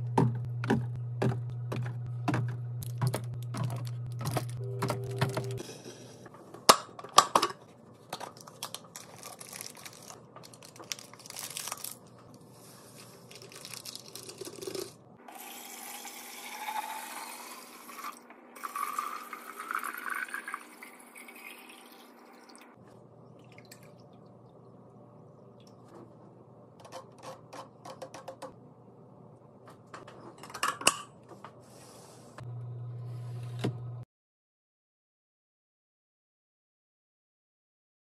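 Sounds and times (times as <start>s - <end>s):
containers clicking and knocking: 0.1s - 5.6s
liquid pouring into container: 13.3s - 22.6s.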